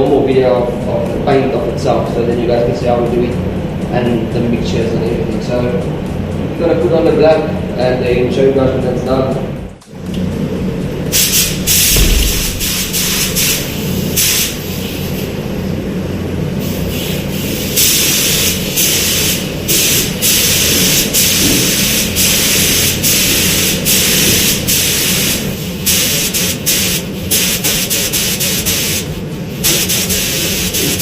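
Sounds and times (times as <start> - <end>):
steady low hum: 0.0 - 31.0
paint spray gun hissing: 11.1 - 15.4, 16.6 - 31.0.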